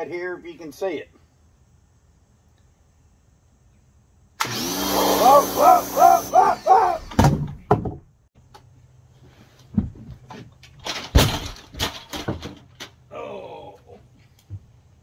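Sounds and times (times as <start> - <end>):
ladder crashing and clattering: 10.7 - 13.0.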